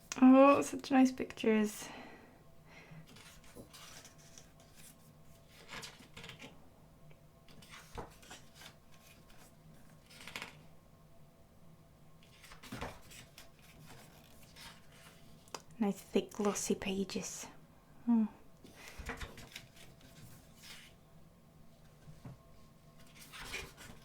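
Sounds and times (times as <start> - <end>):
book pages turning: 3.1 - 6.5, 7.5 - 10.6, 12.2 - 15.7, 18.7 - 21.0, 23.0 - 24.0.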